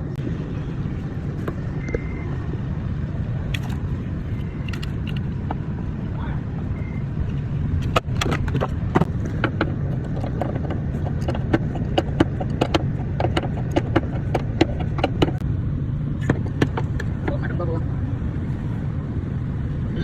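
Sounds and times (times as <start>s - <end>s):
low rumble: 0.0s - 20.0s
sharp clicks and knocks: 3.5s - 5.7s, 6.8s - 15.4s, 16.2s - 17.6s.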